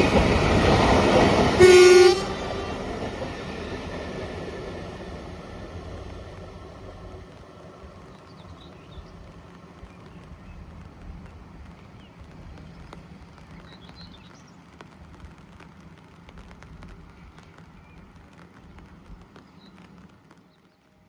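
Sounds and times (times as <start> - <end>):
locomotive engine droning: 0.0 - 13.7.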